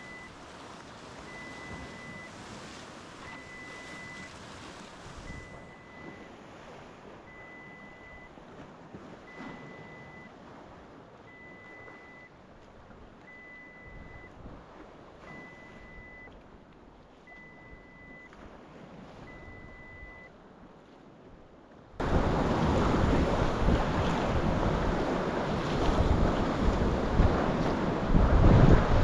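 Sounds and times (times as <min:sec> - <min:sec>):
electronic beep: 0:00.0 - 0:00.3, 0:01.3 - 0:02.3, 0:03.2 - 0:04.3, 0:05.3 - 0:06.3, 0:07.3 - 0:08.3, 0:09.3 - 0:10.3, 0:11.3 - 0:12.3, 0:13.3 - 0:14.3, 0:15.3 - 0:16.3, 0:17.3 - 0:18.3, 0:19.3 - 0:20.3
waves: 0:00.0 - 0:29.0
wind on microphone: 0:22.0 - 0:29.0.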